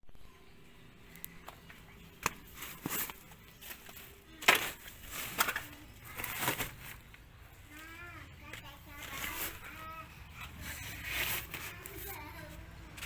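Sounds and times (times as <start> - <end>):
short rustling crunching noises: 2.2 - 13.0.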